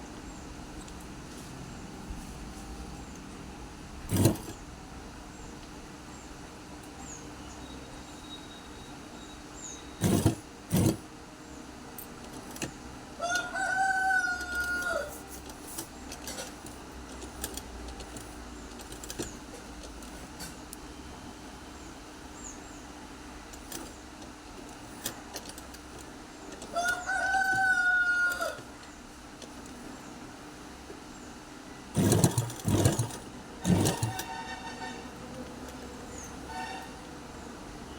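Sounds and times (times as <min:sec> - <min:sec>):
rooster crowing: 0:13.2 - 0:15.2, 0:26.7 - 0:28.7.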